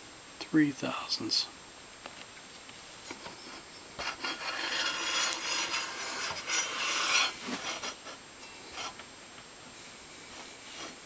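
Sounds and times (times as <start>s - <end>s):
object scraping across saw table: 3.2s - 9.0s.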